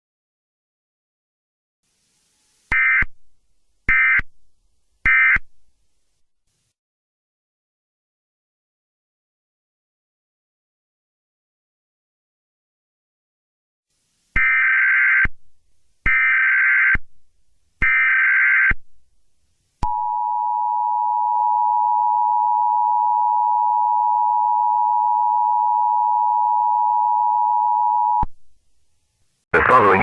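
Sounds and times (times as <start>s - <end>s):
buzzy digital header bursts: 29.6s - 30.0s.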